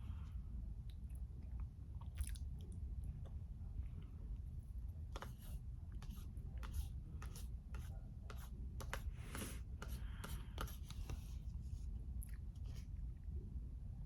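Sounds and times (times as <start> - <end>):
low steady hum: 0.0 - 14.0.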